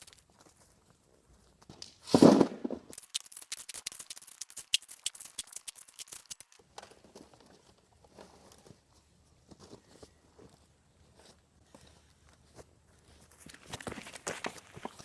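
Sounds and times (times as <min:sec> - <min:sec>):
loose stones rattling: 0:02.9 - 0:06.6, 0:13.5 - 0:15.0
shovel crunching scoop: 0:13.5 - 0:15.0.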